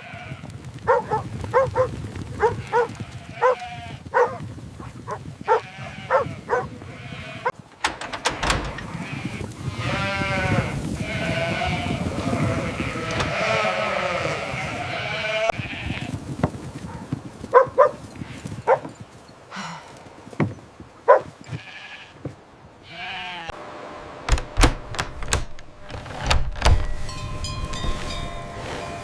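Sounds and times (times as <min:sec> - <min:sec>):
sheep or goats bleating: 0:00.0 - 0:00.5, 0:02.4 - 0:04.0, 0:05.5 - 0:07.6, 0:08.8 - 0:16.2, 0:21.5 - 0:22.2, 0:22.8 - 0:23.6
clicks: 0:07.8 - 0:09.0
bell-like ringing tones: 0:26.9 - 0:29.0.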